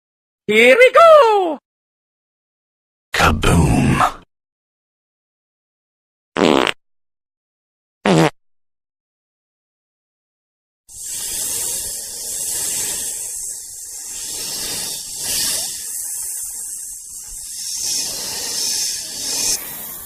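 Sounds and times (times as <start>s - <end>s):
loud rushing hiss: 10.9s - 20.0s.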